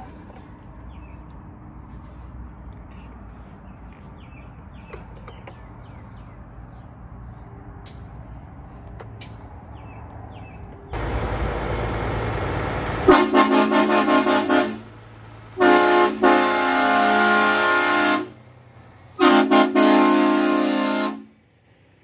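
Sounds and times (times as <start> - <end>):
train horn blasts: 13.0 - 14.9, 15.6 - 18.4, 19.2 - 21.4.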